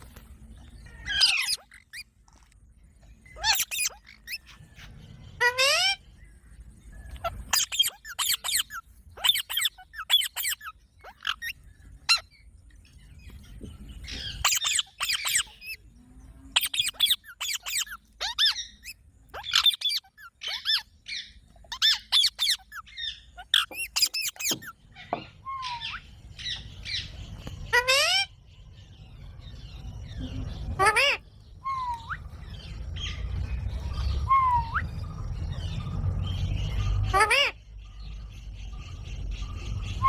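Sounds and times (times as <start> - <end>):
parakeet screeching: 0.9 - 2.1, 3.4 - 6.0, 7.2 - 12.2, 14.2 - 15.8, 16.5 - 26.1, 27.7 - 28.4, 30.7 - 32.3, 37.0 - 37.6.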